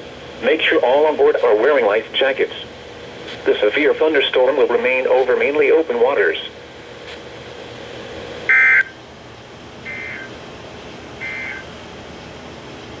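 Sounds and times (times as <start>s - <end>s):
radio hiss: 0.4s - 7.2s, 9.9s - 10.4s, 11.2s - 11.7s
warbling two-tone digital data bursts: 9.9s - 10.3s, 11.2s - 11.6s.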